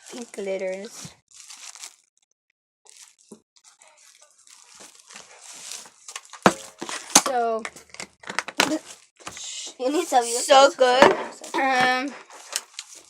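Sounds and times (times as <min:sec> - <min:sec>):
sticky slime crackling: 0:02.9 - 0:08.8.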